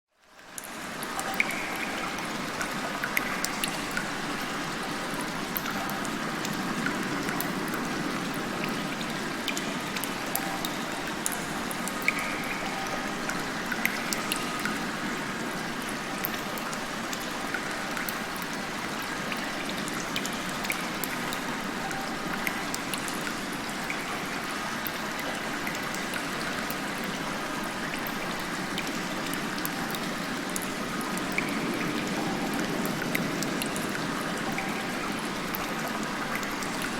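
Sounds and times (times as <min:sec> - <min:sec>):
water trickling: 0:00.2 - 0:36.9
rain falling: 0:00.4 - 0:36.9
water drops splashing: 0:01.2 - 0:02.3.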